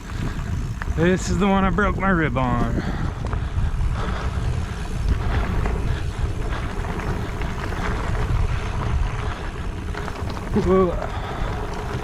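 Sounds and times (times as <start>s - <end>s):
mountain bike tyre rumble: 0.0s - 12.0s
small clicks and rattles: 9.3s - 12.0s.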